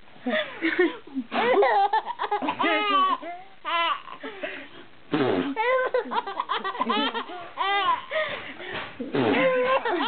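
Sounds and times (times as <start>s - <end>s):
baby laughing: 1.4s - 4.4s, 5.6s - 8.3s, 9.3s - 10.0s.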